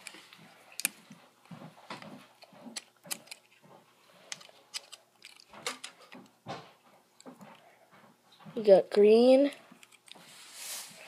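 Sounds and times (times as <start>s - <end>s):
screwdriver turning screws: 2.4s - 3.6s
plastic pieces clicking: 2.7s - 3.6s, 4.3s - 6.3s.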